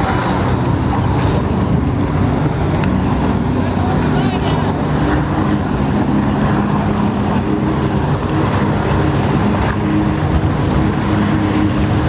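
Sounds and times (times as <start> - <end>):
watercraft engine running loudly: 0.0 - 12.0.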